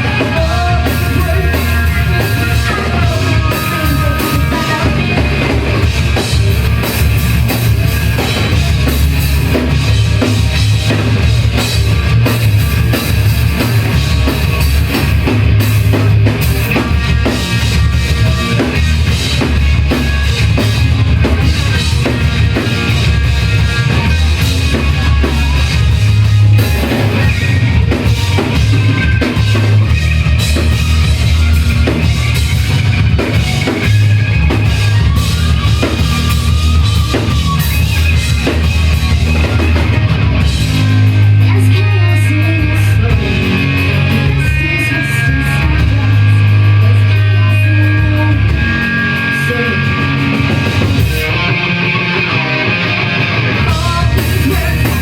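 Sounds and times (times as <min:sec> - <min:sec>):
bass drum and snare beat: 0:00.0 - 0:41.6
live rock band playing: 0:00.0 - 0:55.0.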